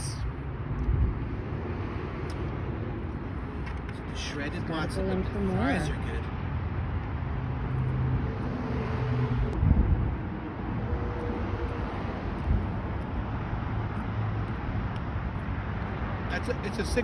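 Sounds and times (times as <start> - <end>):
wind noise: 0.0 - 4.2, 8.2 - 16.3.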